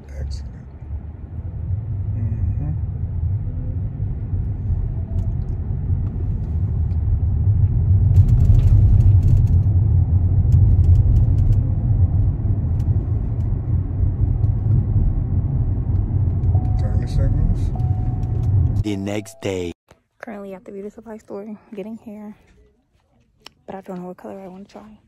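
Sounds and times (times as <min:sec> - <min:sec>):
car road rumble inside cabin: 0:00.0 - 0:19.8.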